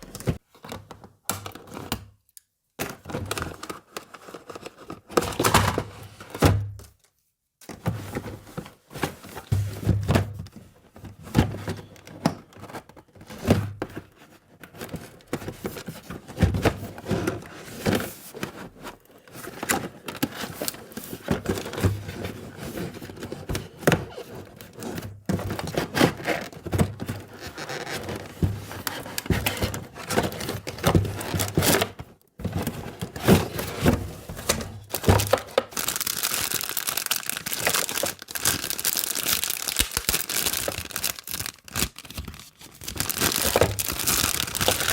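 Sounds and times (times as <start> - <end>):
plastic packaging crinkling and tearing: 34.8 - 44.9.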